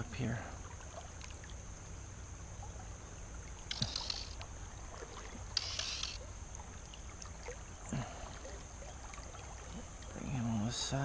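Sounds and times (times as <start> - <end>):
fish splashing in water: 2.6 - 10.3.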